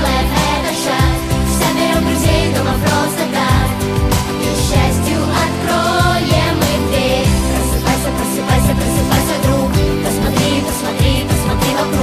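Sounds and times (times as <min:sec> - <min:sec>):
upbeat pop song: 0:00.0 - 0:12.0.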